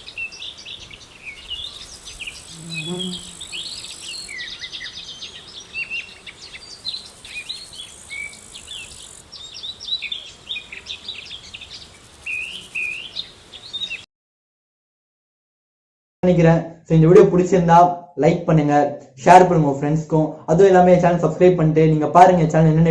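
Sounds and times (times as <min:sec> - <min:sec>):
insect buzzing trill: 0:00.0 - 0:14.0
birds chirping: 0:00.0 - 0:14.1.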